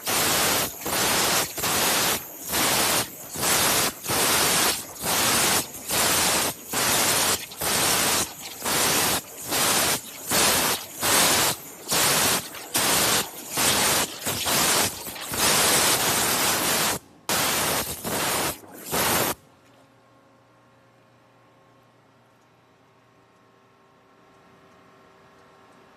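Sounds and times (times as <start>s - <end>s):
waterjet stream hissing: 0.0s - 19.4s.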